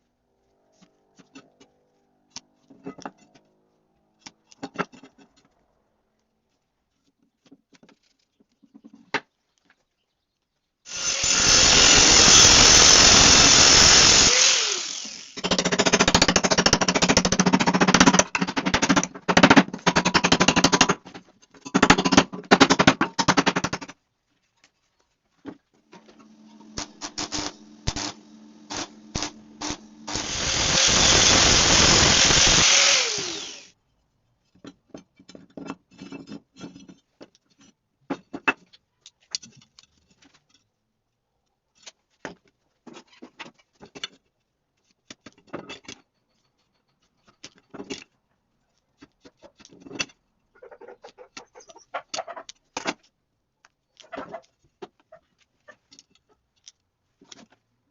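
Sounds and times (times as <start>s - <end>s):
angle grinder grinding steel: 10.9s - 15.4s, 26.2s - 33.7s.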